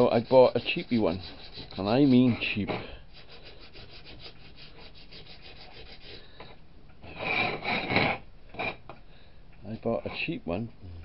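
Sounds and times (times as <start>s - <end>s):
sandpaper rubbing: 0.0s - 6.3s.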